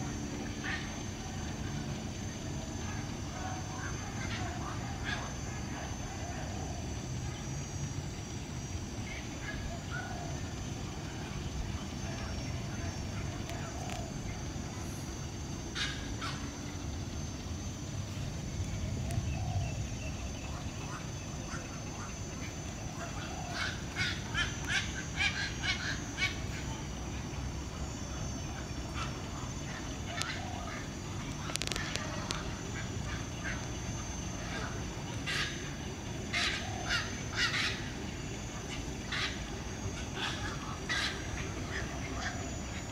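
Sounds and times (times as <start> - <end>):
steady low rumble: 0.0 - 42.9.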